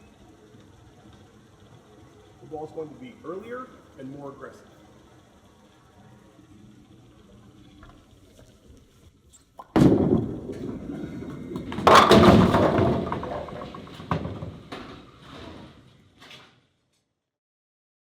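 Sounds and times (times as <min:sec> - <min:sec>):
bowling ball thud: 0:09.6 - 0:15.7
bowling pins crashing: 0:09.6 - 0:15.9
bowling ball rolling rumble: 0:09.6 - 0:16.2.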